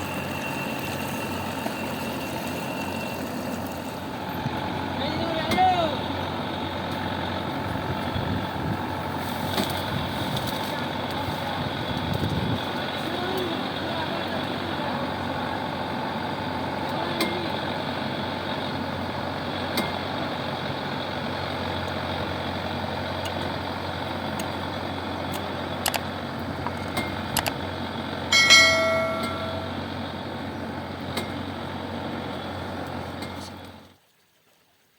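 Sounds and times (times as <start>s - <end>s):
combine harvester engine running: 0.0s - 34.0s
sharp clicks and knocks: 25.3s - 26.1s
short high-pitched tone: 28.3s - 29.9s.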